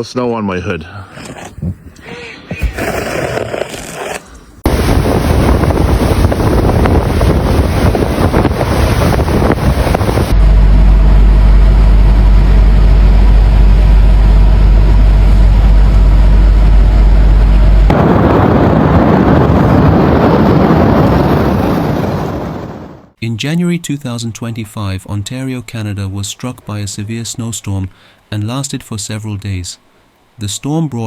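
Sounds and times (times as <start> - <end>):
heavy deep rumble: 4.6 - 23.2
strong wind buffeting microphone: 4.6 - 23.2.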